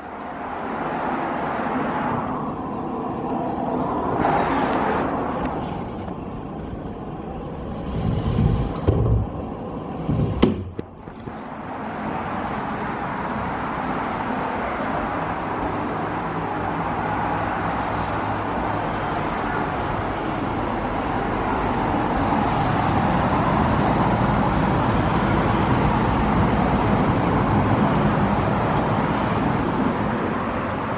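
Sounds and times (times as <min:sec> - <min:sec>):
road traffic noise: 0:00.0 - 0:30.9.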